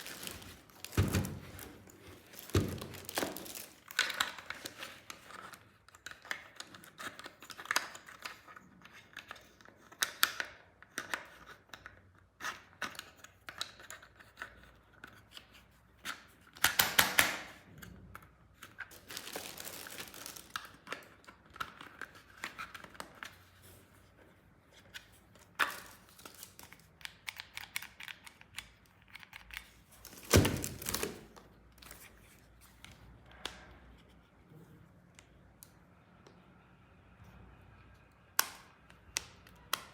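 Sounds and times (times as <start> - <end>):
packaging crinkling and tearing: 0.0 - 5.7, 18.7 - 23.2, 25.4 - 32.4.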